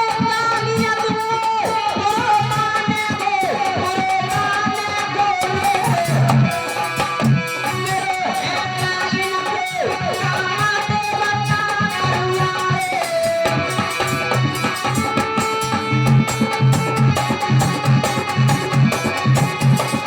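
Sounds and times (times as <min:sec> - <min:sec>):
steady drum beat: 0:00.0 - 0:20.0
plucked string sliding melody: 0:13.0 - 0:20.0.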